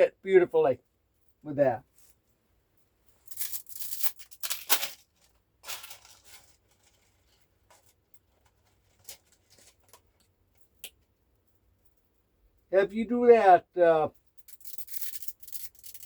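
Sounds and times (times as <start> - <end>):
plastic container crinkling: 4.4 - 10.0.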